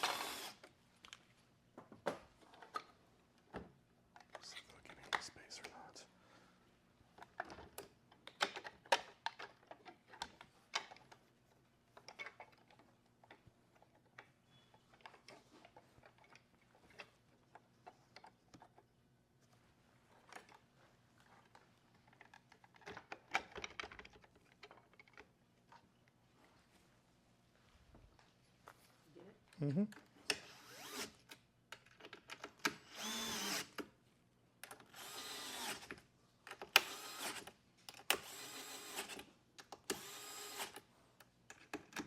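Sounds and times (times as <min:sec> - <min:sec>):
hands clicking and tapping parts: 0:07.1 - 0:26.2, 0:31.2 - 0:32.9, 0:34.6 - 0:35.0, 0:35.6 - 0:38.2, 0:39.1 - 0:40.0, 0:40.6 - 0:42.0.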